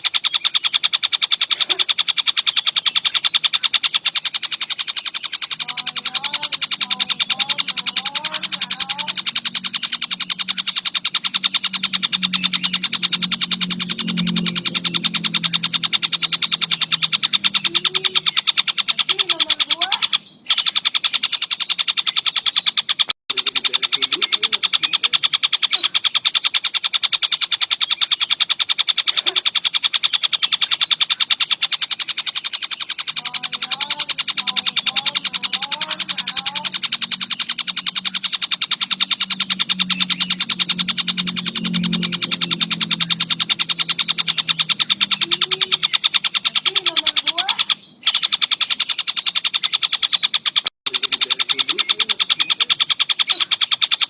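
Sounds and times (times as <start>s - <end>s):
kingfisher chattering call: 0.0s - 54.0s
low drone: 5.3s - 19.8s, 32.8s - 47.4s.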